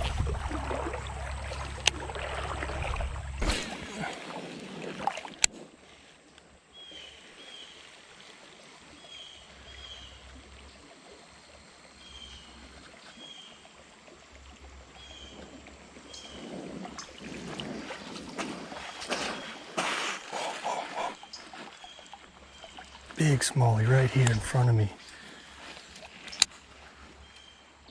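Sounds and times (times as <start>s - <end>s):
creek water running: 0.0s - 27.9s.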